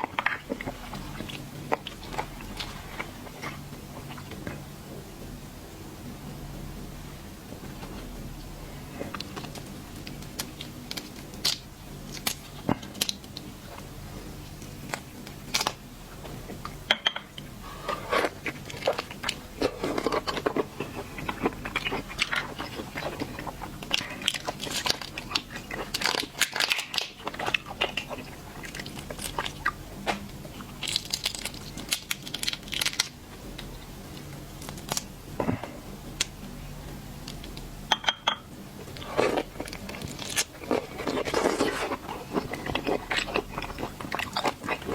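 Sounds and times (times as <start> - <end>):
crunching and chewing: 0.0 - 4.7, 8.7 - 36.4, 38.7 - 44.9
shellfish shells cracking: 9.2 - 13.5, 18.2 - 35.1.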